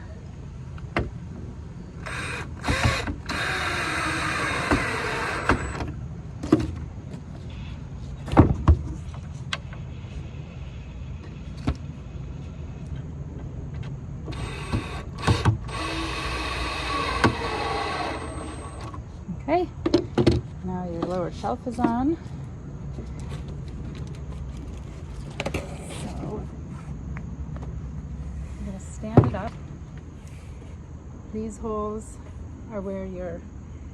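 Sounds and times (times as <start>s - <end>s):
cordless drill driving screws: 2.0s - 5.8s, 14.3s - 19.0s.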